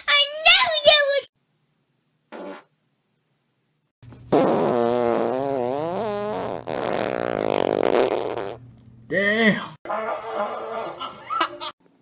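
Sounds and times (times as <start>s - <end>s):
rough fart: 2.3s - 2.7s, 4.3s - 8.6s
long wavering fart: 4.3s - 8.6s.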